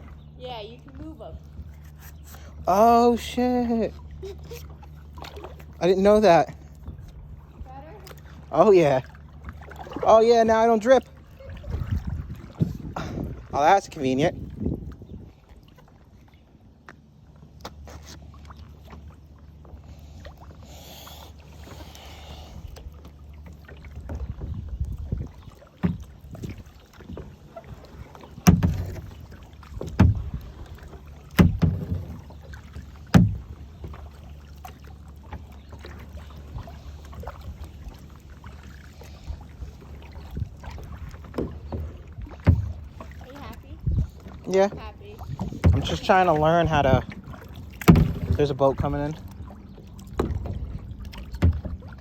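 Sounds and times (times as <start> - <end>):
paddle water swishing and dripping: 0.0 - 52.0
sharp knocks: 28.4 - 29.0, 31.4 - 32.1, 33.1 - 33.4.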